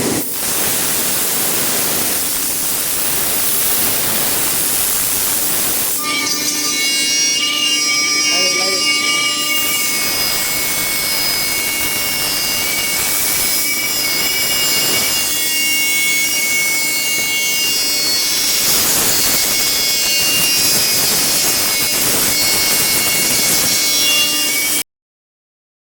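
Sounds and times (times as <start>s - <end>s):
router spindle milling wood: 0.0s - 24.7s.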